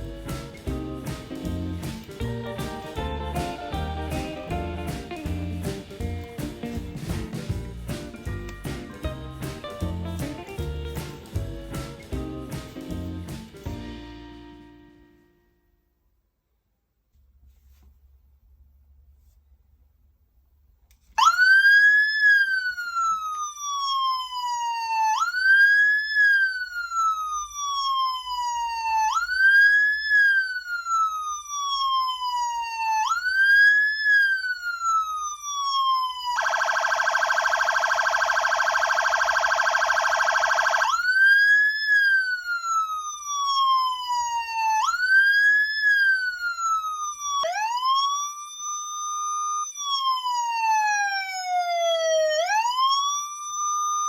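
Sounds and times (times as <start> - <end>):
electronic siren wailing: 21.2 - 54.0.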